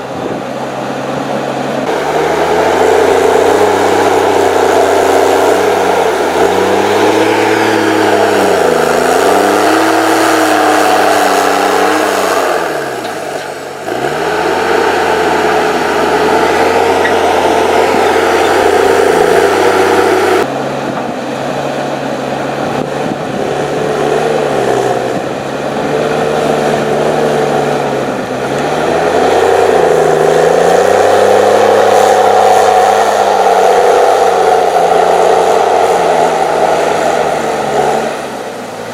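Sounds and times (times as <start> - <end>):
diesel engine running hard: 0.0 - 38.9.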